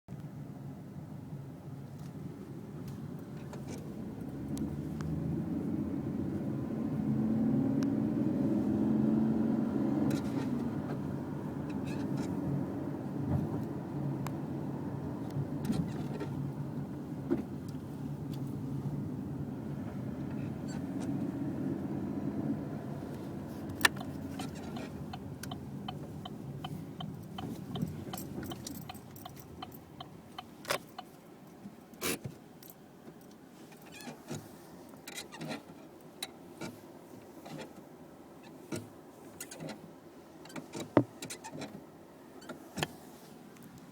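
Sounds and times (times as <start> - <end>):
car engine running: 10.1 - 31.1
sharp clicks and ticks: 23.8 - 31.1.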